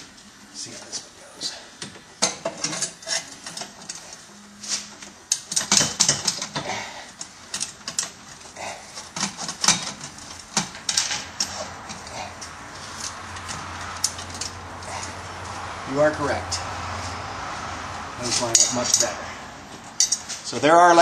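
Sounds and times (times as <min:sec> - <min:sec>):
metal parts clicking and clinking: 0:02.2 - 0:15.2, 0:18.3 - 0:19.2, 0:20.0 - 0:20.6.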